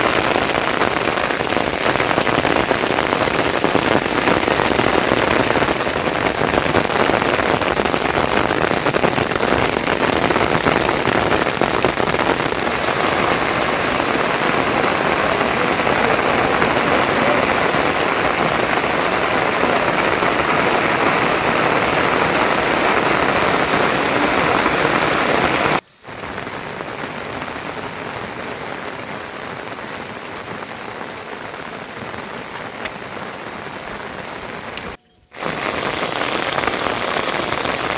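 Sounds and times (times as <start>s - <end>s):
steady falling rain: 0.0s - 37.9s.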